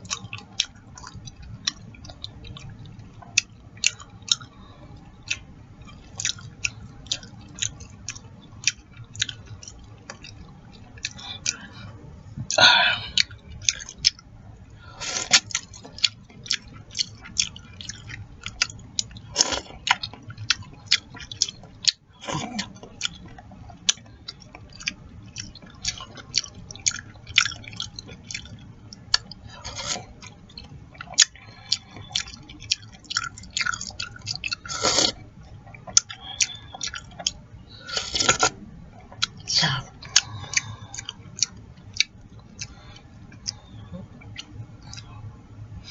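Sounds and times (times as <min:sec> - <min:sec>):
chewing with wet lip smacks: 0:00.0 - 0:45.9
slurping: 0:19.3 - 0:20.0, 0:33.1 - 0:35.2, 0:36.0 - 0:38.6.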